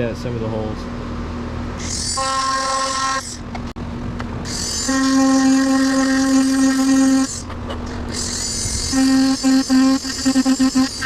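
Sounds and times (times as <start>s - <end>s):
rotary handpiece whining: 1.8s - 3.7s, 4.4s - 11.0s.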